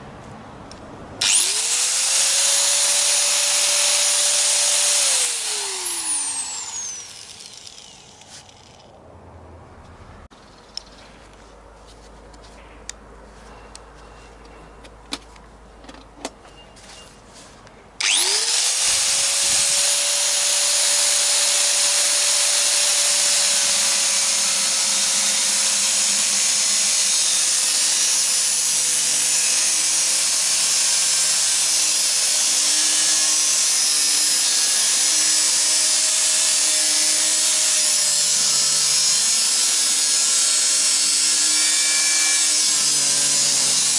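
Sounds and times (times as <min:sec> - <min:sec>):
electric power tool whine: 0:01.2 - 0:08.9, 0:18.0 - 0:43.9.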